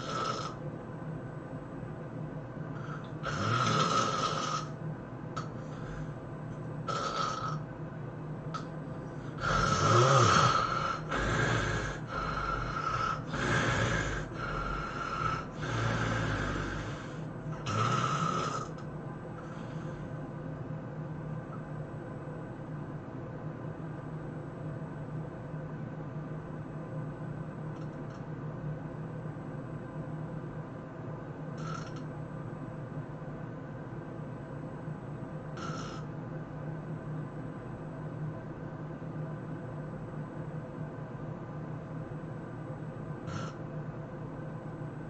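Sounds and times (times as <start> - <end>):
person snoring: 0.0 - 0.6, 2.8 - 4.8, 6.8 - 7.6, 9.2 - 18.8, 31.6 - 32.0, 35.6 - 36.1, 43.3 - 43.6.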